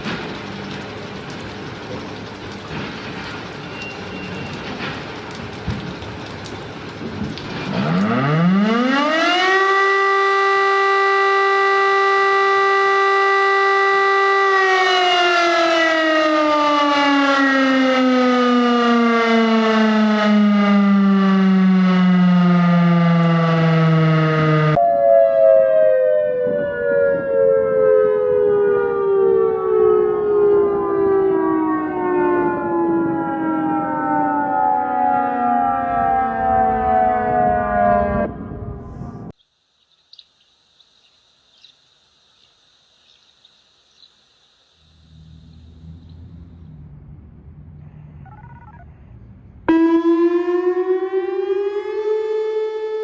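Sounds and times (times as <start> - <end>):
tornado warning siren: 0.0 - 39.4, 44.6 - 53.0
second siren winding down: 7.6 - 39.3, 44.9 - 49.0, 49.6 - 53.0.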